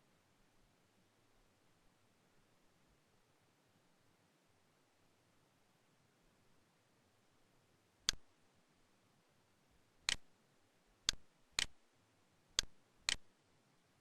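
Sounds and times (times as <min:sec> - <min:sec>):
computer mouse clicks: 0:10.1 - 0:10.3, 0:11.1 - 0:11.8, 0:12.6 - 0:13.3.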